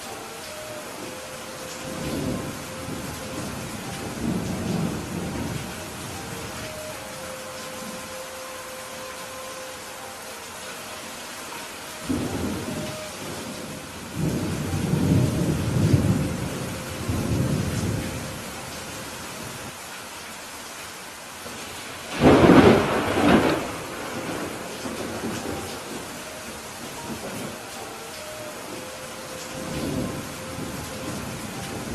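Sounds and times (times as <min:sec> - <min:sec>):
steady rain: 0:00.0 - 0:31.9
thunder rumbling: 0:01.0 - 0:08.1, 0:12.0 - 0:18.8, 0:22.0 - 0:27.8, 0:28.6 - 0:31.9
sharp thunderclap: 0:22.1 - 0:25.3.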